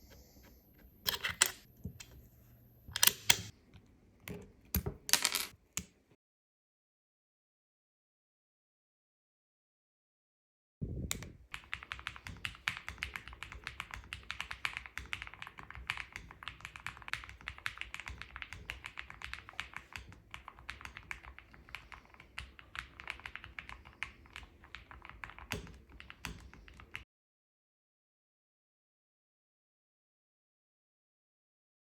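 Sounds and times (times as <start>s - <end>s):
rapid mechanical keyboard typing: 11.4s - 27.0s.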